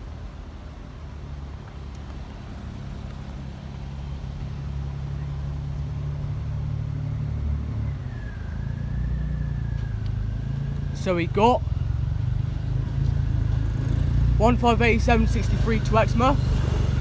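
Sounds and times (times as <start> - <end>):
steady high squeal: 7.0 - 11.2.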